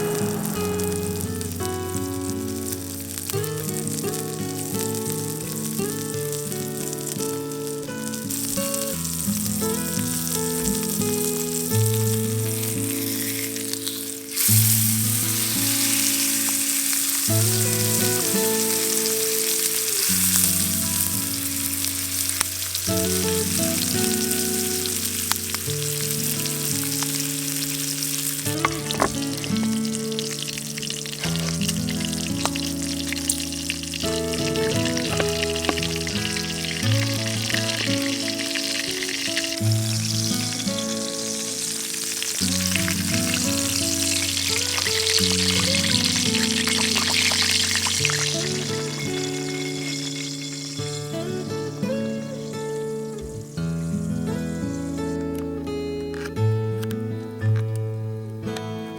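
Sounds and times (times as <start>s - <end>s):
pork belly sizzling: 0.0s - 56.3s
background music: 6.7s - 53.6s.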